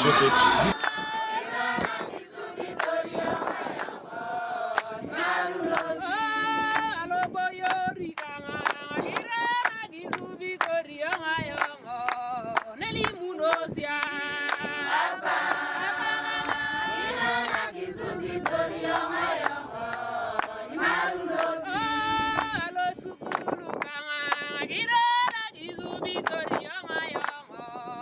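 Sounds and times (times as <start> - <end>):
sharp claps: 0.0 - 1.0
group singing in chorus: 0.0 - 7.1, 12.7 - 23.5.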